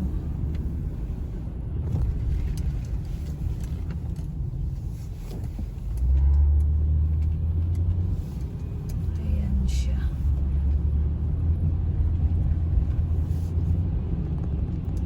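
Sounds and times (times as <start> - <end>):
car engine and tyres rumbling: 0.0 - 15.0.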